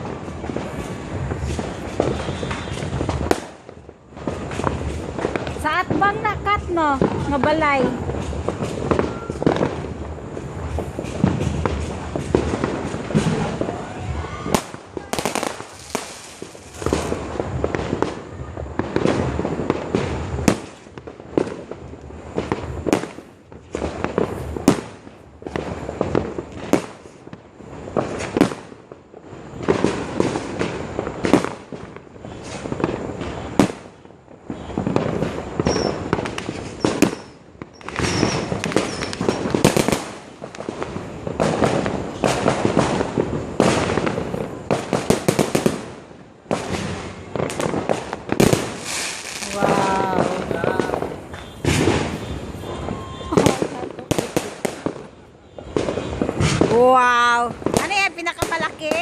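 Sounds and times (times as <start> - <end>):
crackling and rumbling: 0.0 - 59.0
fireworks bangs: 0.0 - 59.0.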